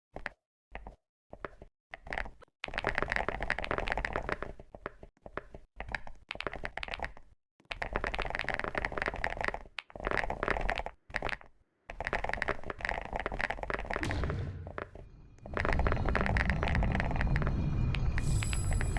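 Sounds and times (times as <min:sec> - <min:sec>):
fast keyboard typing: 0:00.2 - 0:14.1, 0:14.7 - 0:17.6.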